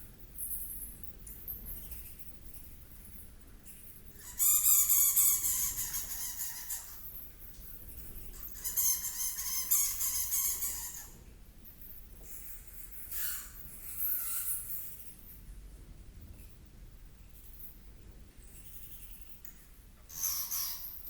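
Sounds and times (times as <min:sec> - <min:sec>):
harsh buzzy animal calls: 0:20.1 - 0:21.0.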